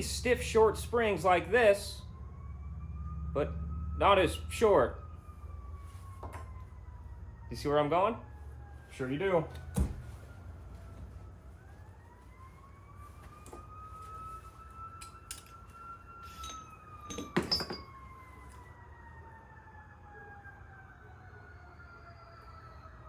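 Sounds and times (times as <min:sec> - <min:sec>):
faint siren wailing: 0:00.0 - 0:23.0
knocks and clatter: 0:16.4 - 0:18.0.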